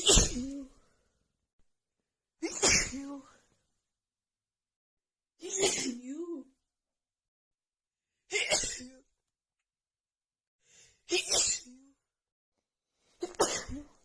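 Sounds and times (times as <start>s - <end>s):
woman sneezing: 0.0s - 0.7s, 2.4s - 3.2s, 5.4s - 6.0s, 8.3s - 8.9s, 11.1s - 11.8s, 13.2s - 14.0s.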